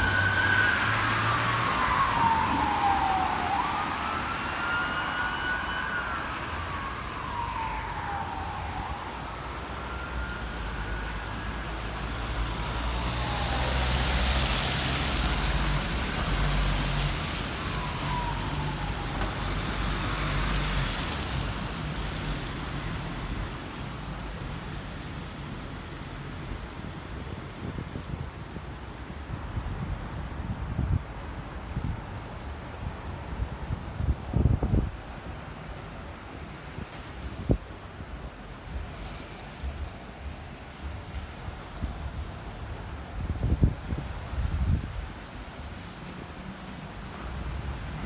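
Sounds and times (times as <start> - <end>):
emergency vehicle siren wailing: 0.0 - 23.8
city traffic rumble: 0.0 - 48.0.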